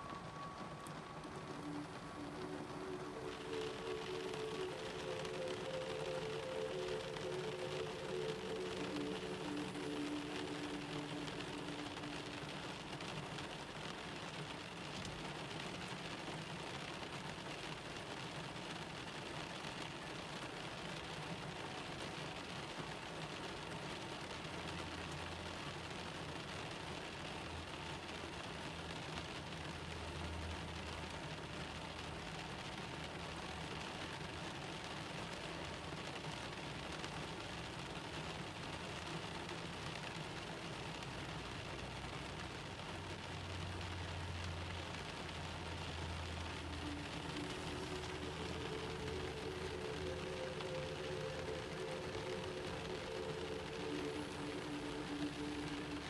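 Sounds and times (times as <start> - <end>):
low steady hum: 0.0 - 15.2, 44.4 - 56.0
rain pattering on a car: 0.0 - 56.0.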